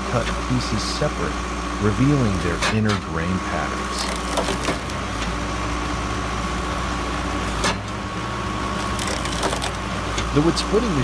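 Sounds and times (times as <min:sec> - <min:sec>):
hydraulic wood splitter humming: 0:00.0 - 0:11.0
wood splitting crack: 0:03.9 - 0:05.2, 0:08.8 - 0:09.8.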